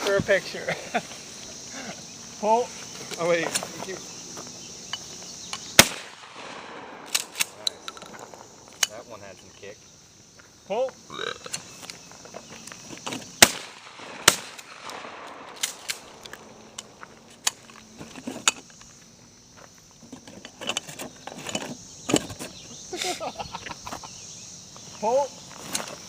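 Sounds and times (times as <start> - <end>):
crickets chirping: 0.0 - 26.0
gun handling clicks: 4.9 - 9.0, 13.4 - 17.8
shotgun shots: 5.8 - 7.7, 13.4 - 16.4.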